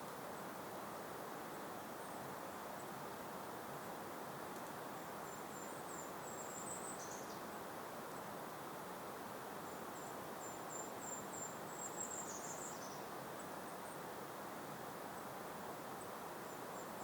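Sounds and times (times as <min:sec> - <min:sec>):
gentle breeze hiss: 0:00.0 - 0:17.0
songbird singing: 0:03.9 - 0:08.6, 0:09.6 - 0:14.2, 0:15.2 - 0:17.0.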